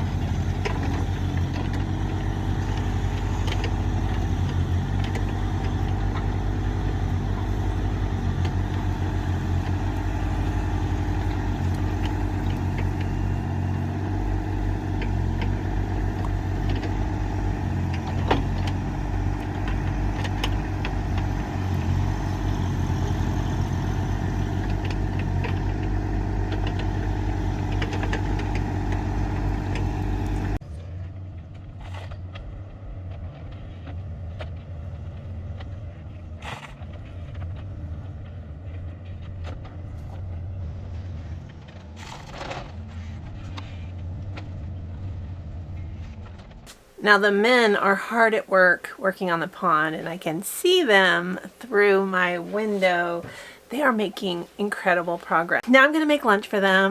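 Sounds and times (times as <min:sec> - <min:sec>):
diesel engine running: 0:00.0 - 0:56.9.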